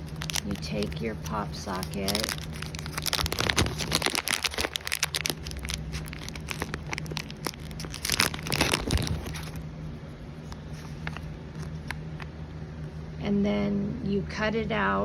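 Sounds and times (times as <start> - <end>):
thin plastic crinkling: 0.0 - 9.7, 10.4 - 12.4.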